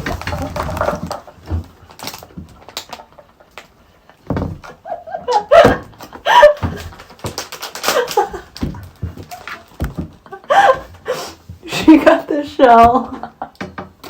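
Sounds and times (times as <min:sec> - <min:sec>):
packaging clicks and rustles: 0:00.0 - 0:04.8, 0:05.4 - 0:10.4.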